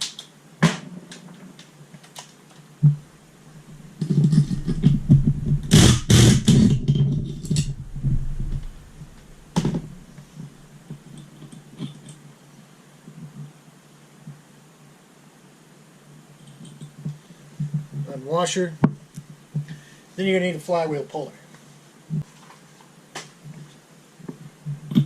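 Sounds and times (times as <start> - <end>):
sharp knock: 4.5 - 10.0.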